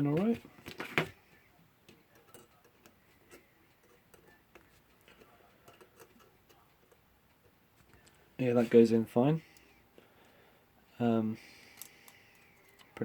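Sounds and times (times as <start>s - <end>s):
small metallic clicks: 11.6s - 13.0s.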